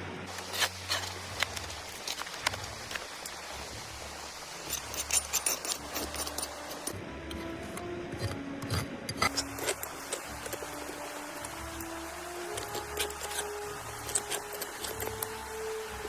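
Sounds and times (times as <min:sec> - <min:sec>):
background music with held notes: 0:00.0 - 0:16.0.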